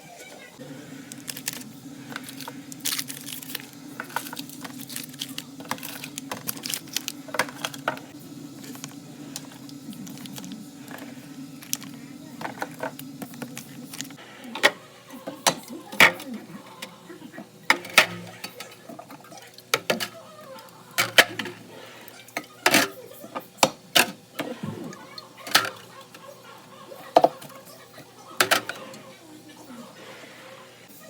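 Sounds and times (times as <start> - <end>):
containers clacking on shelves: 4.0 - 27.8, 28.4 - 29.0.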